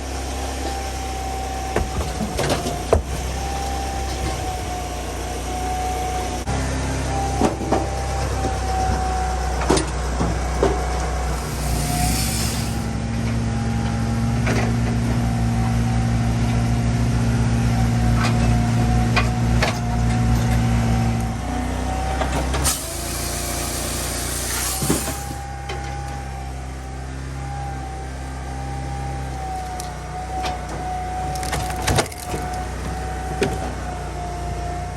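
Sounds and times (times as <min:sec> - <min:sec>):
firewood processor engine: 0:00.0 - 0:34.9
steady whine: 0:01.7 - 0:28.7
hiss: 0:11.2 - 0:12.9, 0:22.6 - 0:25.4.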